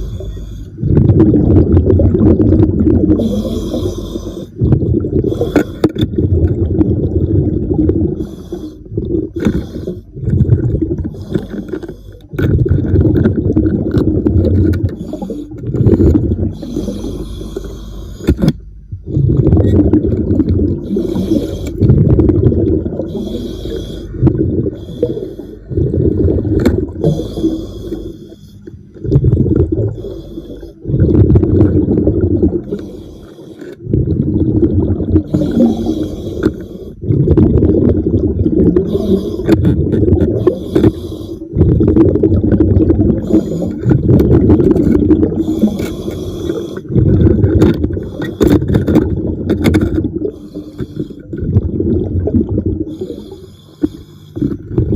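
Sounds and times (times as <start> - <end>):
exhaled bubbles gushing underwater: 0.0 - 54.9
hissing breaths drawn in: 23.1 - 24.2, 45.4 - 46.9.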